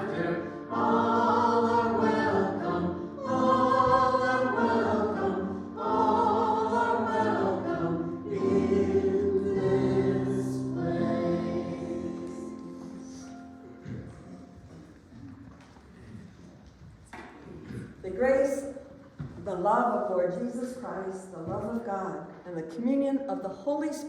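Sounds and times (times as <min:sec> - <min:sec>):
congregation singing a hymn: 0:00.0 - 0:14.9.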